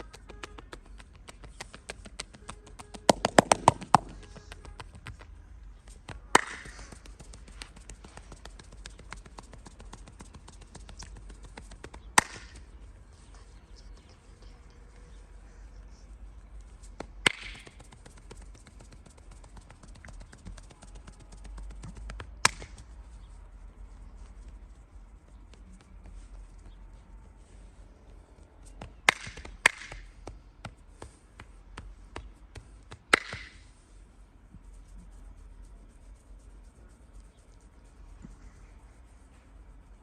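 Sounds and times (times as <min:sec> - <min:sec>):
loud sharp slaps: 0:00.0 - 0:05.3, 0:06.1 - 0:12.7, 0:17.0 - 0:20.4, 0:21.0 - 0:22.9, 0:28.8 - 0:30.2, 0:32.9 - 0:33.7
hands tapping on body: 0:00.0 - 0:12.9, 0:16.7 - 0:23.0, 0:23.9 - 0:27.4, 0:28.6 - 0:33.6.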